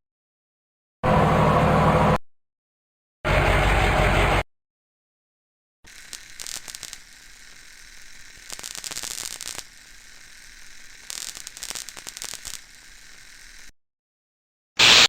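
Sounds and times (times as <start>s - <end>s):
electrical static crackling: 5.9s - 13.7s, 14.8s - 15.0s.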